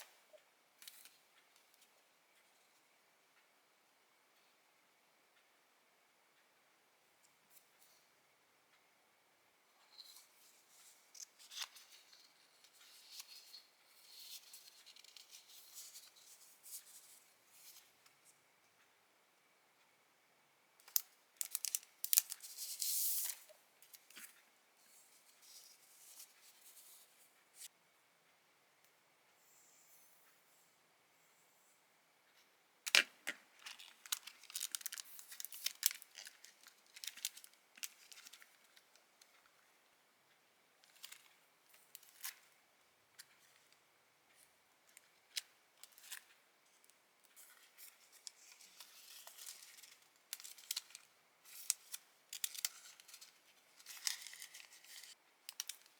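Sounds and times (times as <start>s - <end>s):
paper rustling: 33.6s - 38.6s, 47.4s - 55.9s.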